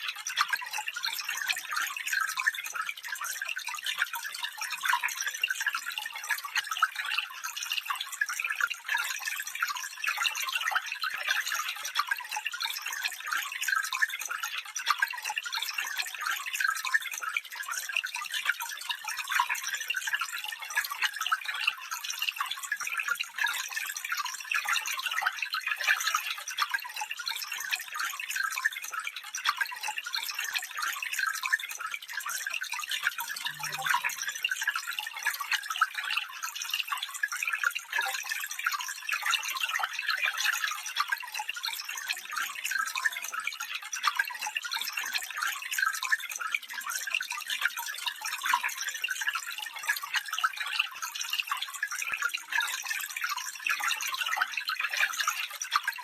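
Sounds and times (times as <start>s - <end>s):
stream water flowing: 33.2s - 34.3s.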